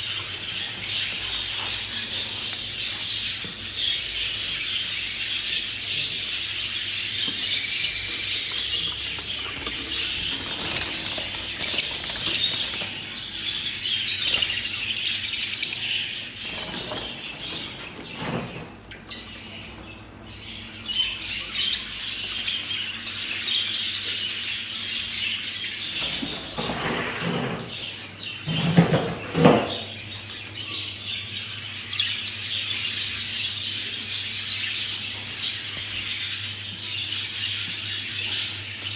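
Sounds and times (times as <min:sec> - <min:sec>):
budgerigars chirping: 0:03.9 - 0:24.2
fast rattling bird trill: 0:07.6 - 0:18.2.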